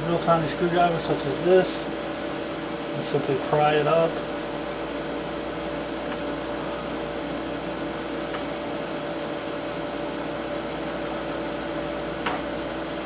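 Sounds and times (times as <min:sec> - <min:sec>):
fan hum and hiss: 0:00.0 - 0:13.0.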